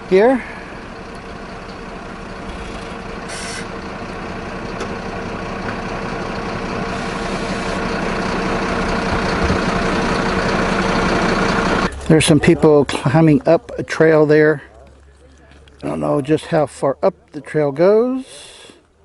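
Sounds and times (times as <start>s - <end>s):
diesel engine idling: 0.0s - 19.0s
brief hiss: 2.6s - 3.7s.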